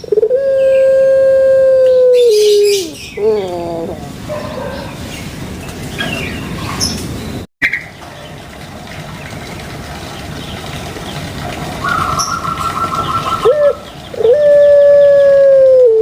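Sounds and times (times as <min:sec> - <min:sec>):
dove cooing: 0:00.0 - 0:05.0, 0:11.8 - 0:16.0.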